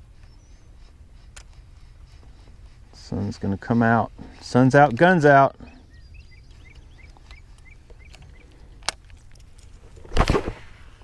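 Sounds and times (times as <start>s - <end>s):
small birds chirping: 0.0s - 9.6s.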